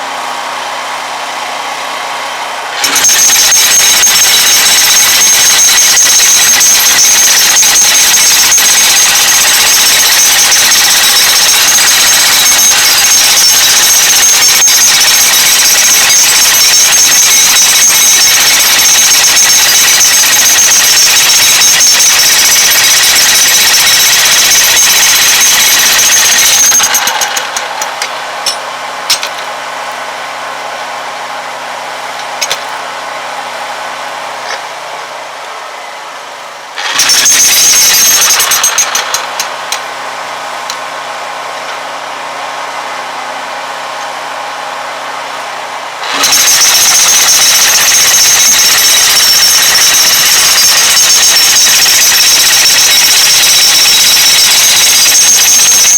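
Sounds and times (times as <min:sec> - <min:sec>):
jackhammer breaking concrete: 0:02.6 - 0:29.5, 0:32.2 - 0:32.7, 0:36.8 - 0:41.9, 0:46.0 - 0:55.9.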